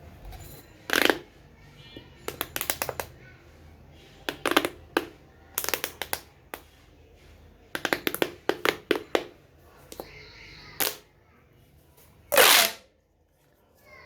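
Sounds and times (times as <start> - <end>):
plastic pop tubes clicking: 0.9 - 1.2, 2.2 - 3.2, 4.3 - 6.7, 7.7 - 9.3.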